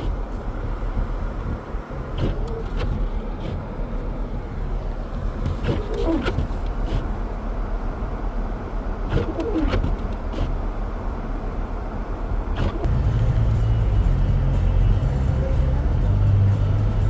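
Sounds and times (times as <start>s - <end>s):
car road and wind noise: 0.0s - 17.0s
short squeaks: 2.1s - 3.7s, 5.4s - 7.2s, 9.1s - 10.6s.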